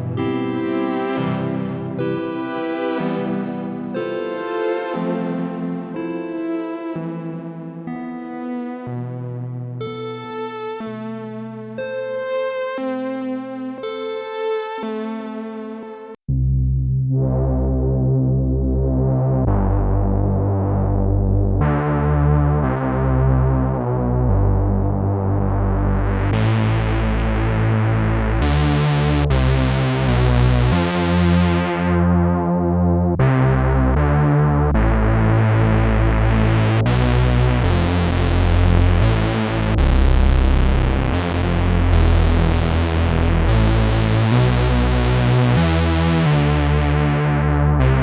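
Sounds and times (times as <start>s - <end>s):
synthesizer playing low notes and chords: 0.0s - 48.0s.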